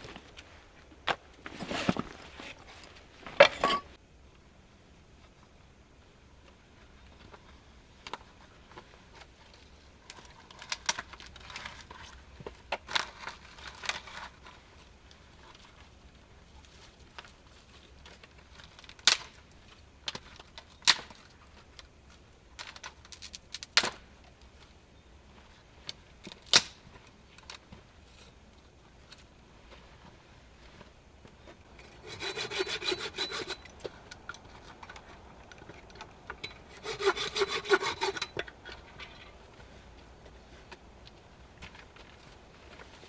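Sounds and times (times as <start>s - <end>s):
rustling: 0.0s - 4.0s, 26.8s - 43.0s.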